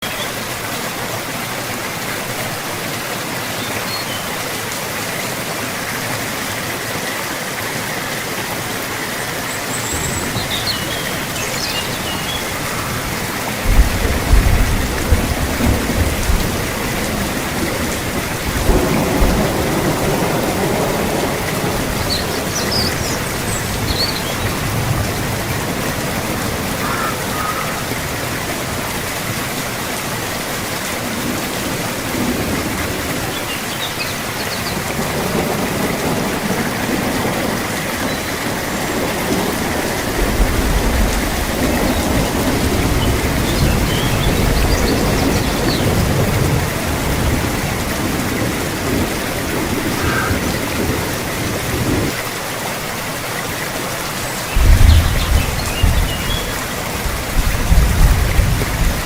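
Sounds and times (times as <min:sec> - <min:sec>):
steady rainfall: 0:00.0 - 0:59.0
thunder rumbling: 0:09.9 - 0:29.8, 0:34.7 - 0:52.2, 0:54.6 - 0:59.0.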